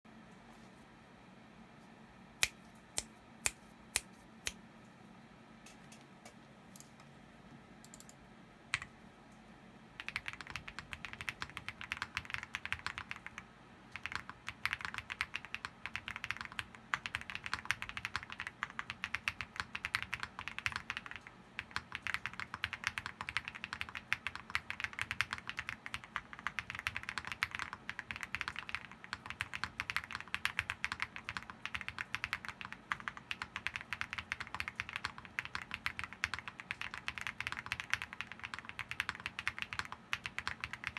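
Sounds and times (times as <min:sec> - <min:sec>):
mechanical keyboard typing: 0:07.8 - 0:08.2, 0:10.0 - 0:40.9.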